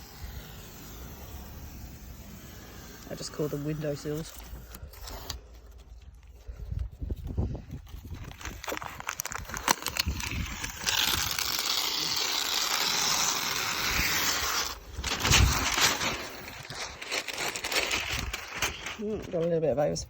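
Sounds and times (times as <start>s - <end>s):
aerosol spray can hissing: 0.0s - 5.3s.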